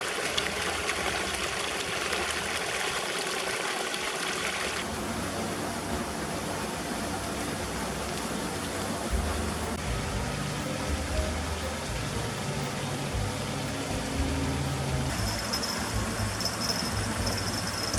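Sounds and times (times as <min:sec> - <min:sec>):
steady rushing noise: 0:04.8 - 0:17.9.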